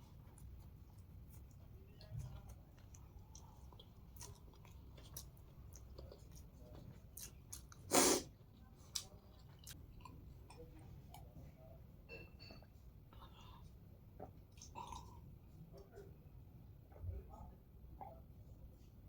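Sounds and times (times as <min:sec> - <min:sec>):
chewing noodles: 0:00.0 - 0:11.5.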